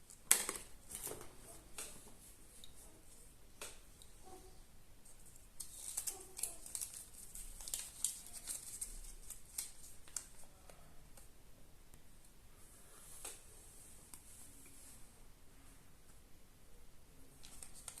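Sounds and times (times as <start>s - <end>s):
packaging crinkling: 5.6s - 10.4s.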